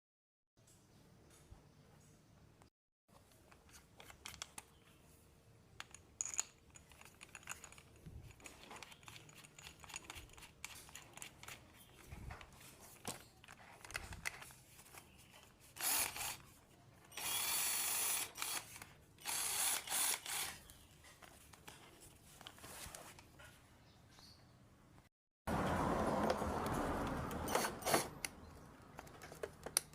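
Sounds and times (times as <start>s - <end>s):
cordless drill running: 15.8s - 16.4s, 17.1s - 20.6s.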